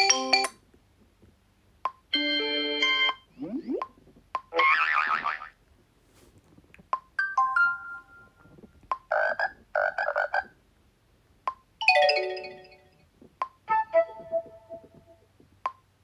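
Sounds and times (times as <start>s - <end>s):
bright chime: 7.2s - 8.5s
two-tone chime: 7.2s - 8.5s.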